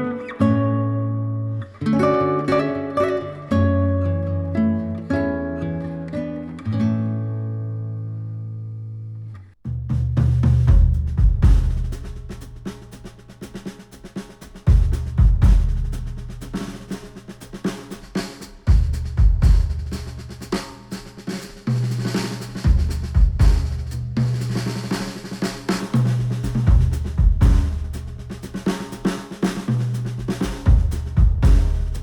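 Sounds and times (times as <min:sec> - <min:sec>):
deep bass notes: 0:09.7 - 0:12.6, 0:14.7 - 0:16.6, 0:22.7 - 0:24.6, 0:26.0 - 0:28.6, 0:29.8 - 0:32.0
drum kit: 0:09.7 - 0:32.0.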